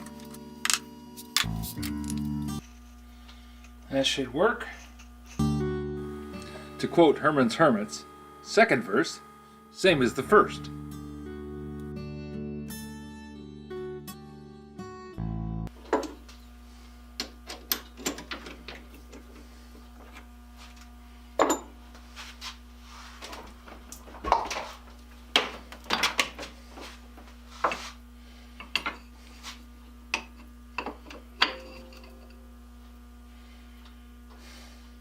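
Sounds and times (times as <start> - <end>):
low electrical hum: 0.0 - 13.0, 15.2 - 35.0
wood and tools clattering: 17.2 - 19.4.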